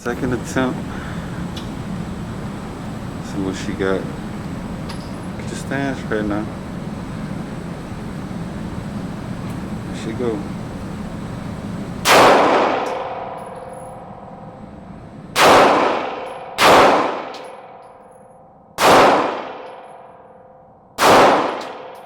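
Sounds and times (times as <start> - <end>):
gunshots: 12.0 - 13.3, 15.4 - 17.5, 18.8 - 19.8, 21.0 - 22.0.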